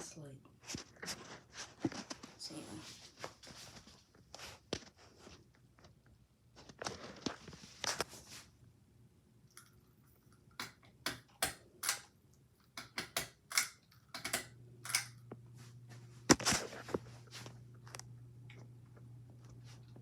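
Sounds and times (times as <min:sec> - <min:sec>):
low steady hum: 0:07.1 - 0:20.0
pull-chain switch clicks and rattles: 0:10.6 - 0:12.1, 0:12.8 - 0:15.2.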